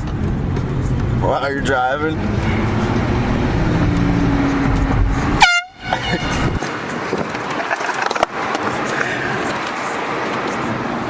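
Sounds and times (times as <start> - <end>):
moving car noise: 0.0 - 11.0
air horn blast: 5.3 - 6.6.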